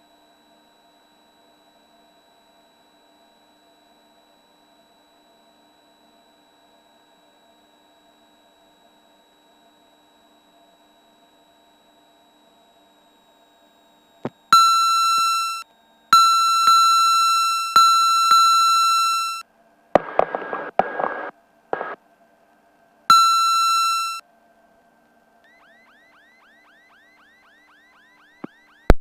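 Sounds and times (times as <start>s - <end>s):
high warning beep: 14.5s - 15.6s, 16.2s - 19.4s, 23.1s - 24.2s
static bursts: 20.0s - 22.0s.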